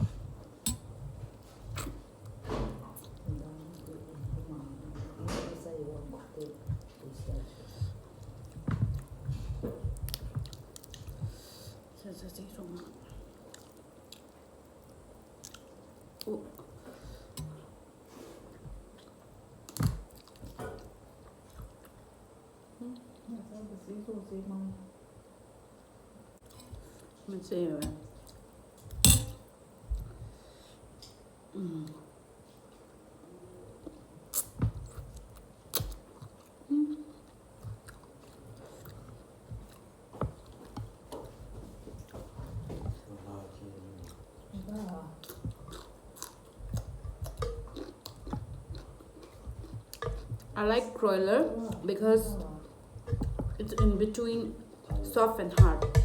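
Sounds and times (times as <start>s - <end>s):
close chewing and biting: 6.0s - 11.4s, 12.6s - 17.4s, 18.8s - 22.0s, 33.9s - 43.1s, 44.0s - 50.6s.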